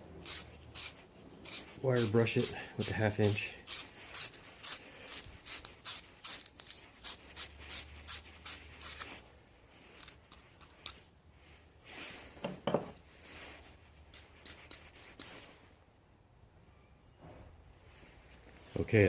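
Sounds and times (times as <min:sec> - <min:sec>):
wire brush scrubbing copper fitting: 0:00.2 - 0:09.1.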